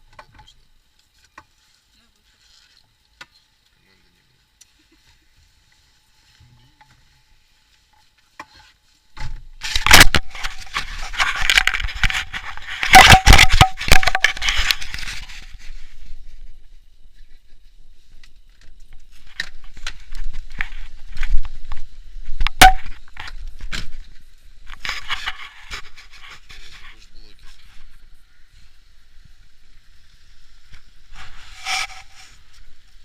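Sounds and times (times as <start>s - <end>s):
loud scraping and rustling: 7.4s - 16.7s, 19.0s - 28.0s, 30.7s - 32.7s
sharp clicks and crackles: 9.6s - 15.5s.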